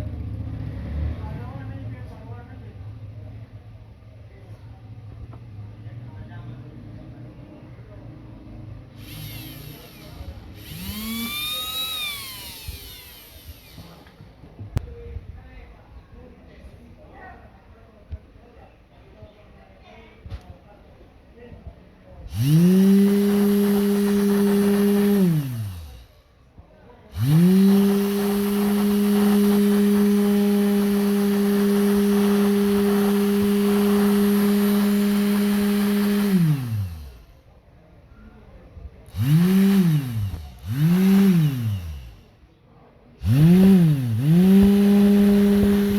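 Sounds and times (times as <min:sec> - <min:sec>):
small electric motor whining: 0:09.0 - 0:14.3, 0:22.3 - 0:26.2, 0:27.1 - 0:37.3, 0:39.1 - 0:42.3, 0:43.2 - 0:45.9.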